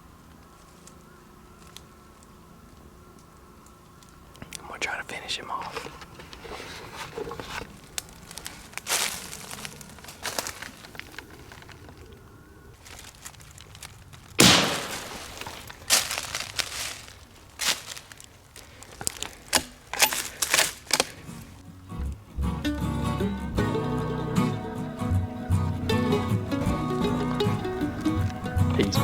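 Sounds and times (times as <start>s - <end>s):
rustling crunches: 5.5s - 21.6s
rifle shot: 14.4s - 15.6s
acoustic guitar music: 21.6s - 29.0s.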